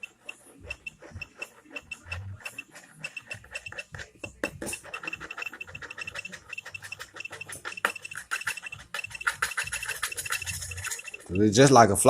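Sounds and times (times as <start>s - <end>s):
rapid light ticking: 4.7s - 11.7s.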